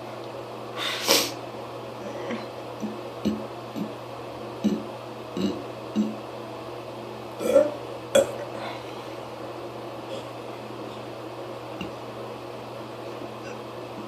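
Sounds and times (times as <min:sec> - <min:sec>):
sharp intake of air: 0:00.8 - 0:01.4
person burping: 0:02.0 - 0:04.0, 0:04.6 - 0:06.2, 0:07.4 - 0:08.6.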